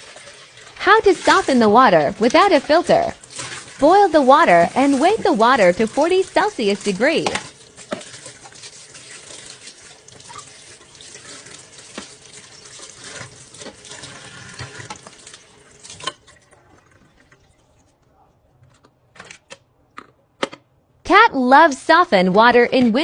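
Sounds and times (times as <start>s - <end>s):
running water: 0.0s - 17.9s.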